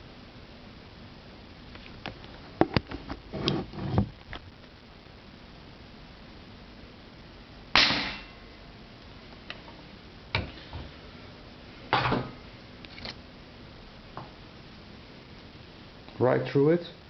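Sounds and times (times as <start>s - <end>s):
air rifle shot: 7.8s - 8.3s.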